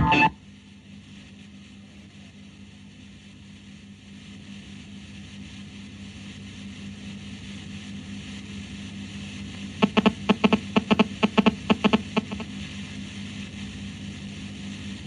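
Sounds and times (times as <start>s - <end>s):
electrical hum and hiss: 0.0s - 15.0s
sharp clicks: 9.8s - 12.5s.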